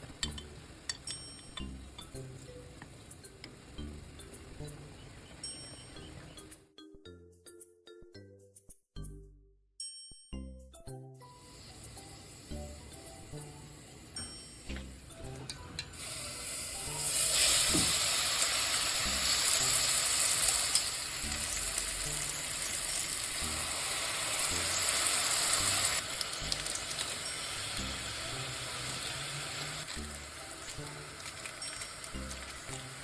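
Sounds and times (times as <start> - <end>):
noodles sizzling in a pan: 11.4 - 14.7, 16.0 - 33.0.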